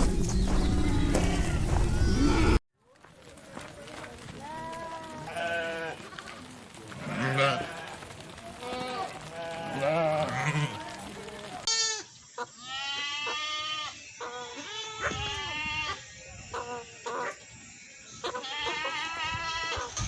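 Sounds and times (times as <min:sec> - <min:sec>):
goats bleating: 0:04.4 - 0:06.2, 0:06.9 - 0:16.0, 0:18.2 - 0:20.0.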